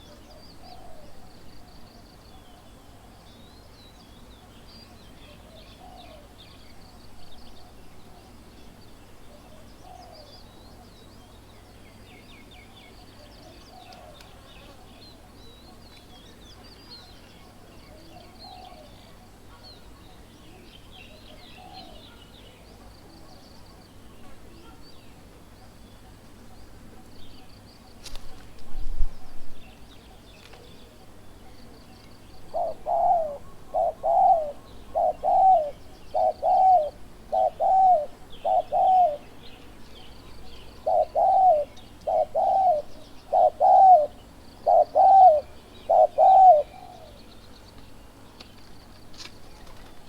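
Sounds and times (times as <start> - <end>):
small birds chirping and trilling: 0.0 - 50.0
lower bird call: 32.4 - 39.4, 40.7 - 47.3.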